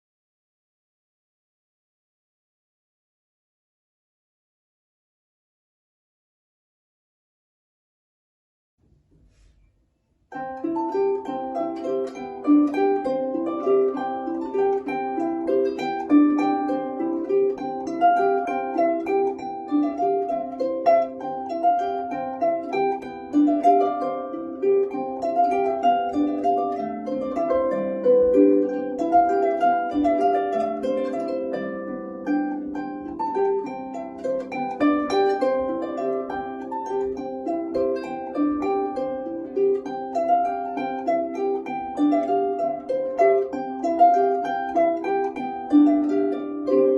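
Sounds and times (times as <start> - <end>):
harp playing: 10.3 - 46.9.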